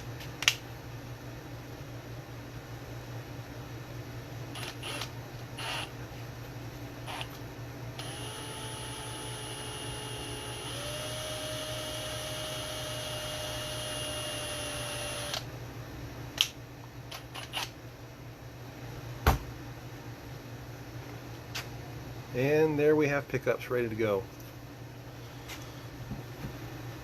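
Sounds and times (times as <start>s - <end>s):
power tool motor whirring: 4.6s - 5.9s, 8.0s - 15.4s.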